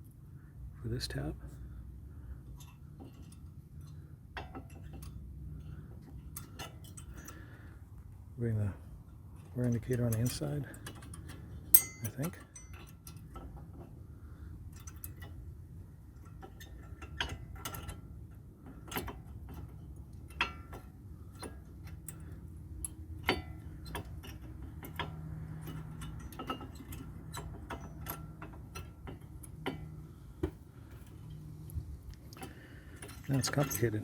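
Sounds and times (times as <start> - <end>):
low steady hum: 0.0 - 34.0
metallic clicks of brake pads: 9.3 - 14.0, 16.1 - 34.0.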